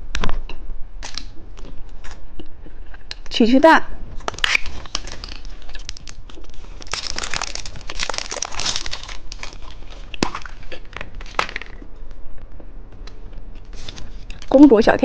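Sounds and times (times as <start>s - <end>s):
plastic wrapper crinkling and tearing: 1.0s - 1.3s, 4.2s - 11.8s.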